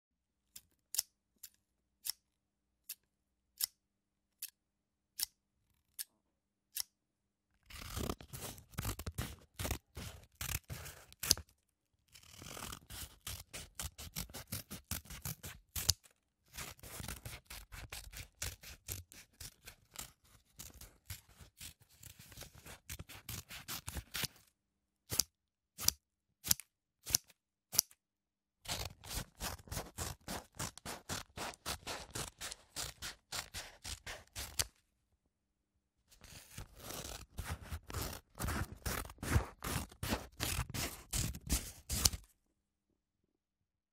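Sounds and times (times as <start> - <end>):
scissors cutting paper: 7.7 - 11.5, 12.1 - 24.4, 25.1 - 28.0, 28.6 - 34.8, 36.2 - 42.3.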